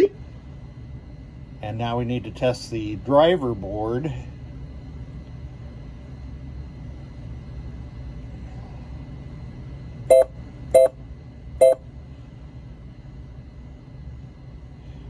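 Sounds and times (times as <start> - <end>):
steady low hum: 0.0 - 15.0
short electronic beeps: 10.1 - 10.9.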